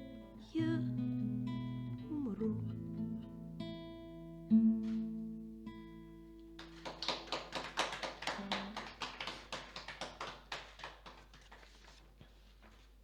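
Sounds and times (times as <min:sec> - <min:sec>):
audience applauding: 0:06.6 - 0:12.1.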